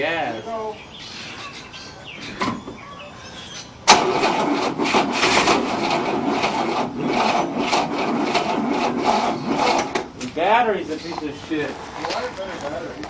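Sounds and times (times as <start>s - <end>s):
starter motor cranking engine: 3.9s - 10.3s.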